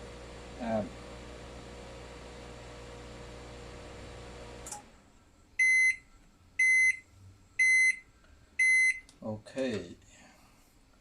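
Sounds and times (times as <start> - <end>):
microwave oven humming: 0.0 - 5.9.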